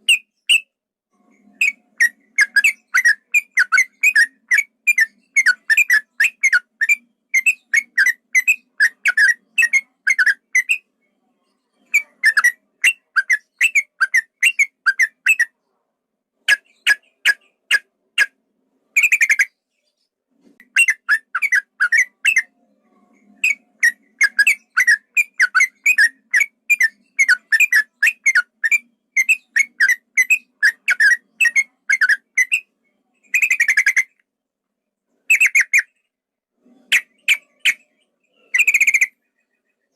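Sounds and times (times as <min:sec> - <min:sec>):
bird singing whistled notes: 0:01.6 - 0:10.9, 0:11.9 - 0:15.5, 0:20.6 - 0:22.5, 0:23.4 - 0:32.7, 0:37.0 - 0:39.9.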